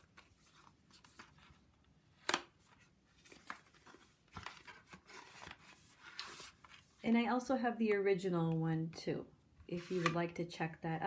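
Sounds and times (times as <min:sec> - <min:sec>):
paper packaging rustling: 0:02.6 - 0:07.0.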